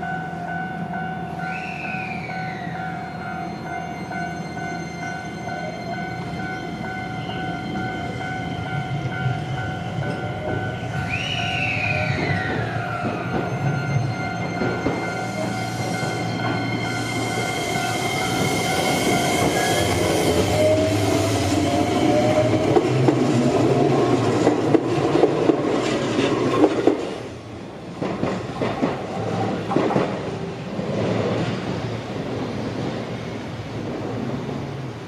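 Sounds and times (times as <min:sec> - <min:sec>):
crossing warning bell ringing: 0:00.0 - 0:23.9
electric train whine: 0:00.0 - 0:35.0
train wheels clicking over rail joints: 0:17.5 - 0:27.3, 0:27.9 - 0:31.6.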